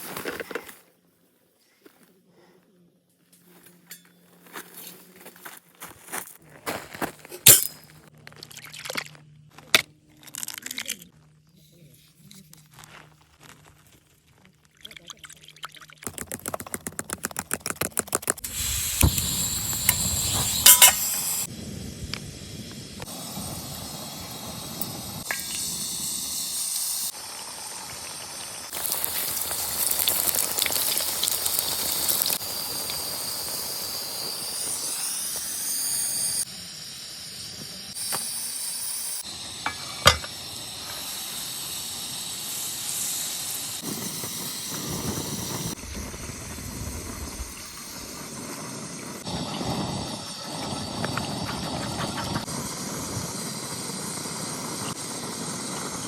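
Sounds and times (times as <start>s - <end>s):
liquid being poured: 8.4s - 9.1s, 14.8s - 16.4s, 28.7s - 32.4s
pancakes sizzling in hot fat: 18.4s - 56.0s.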